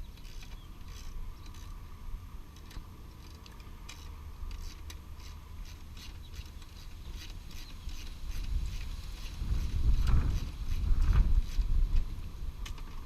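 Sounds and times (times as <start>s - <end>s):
ratchet clicking: 0.2s - 1.8s, 2.6s - 10.8s.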